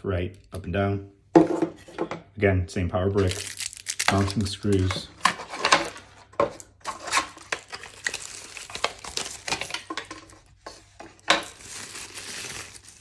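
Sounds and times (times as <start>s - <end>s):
packaging rustling: 3.2s - 13.0s.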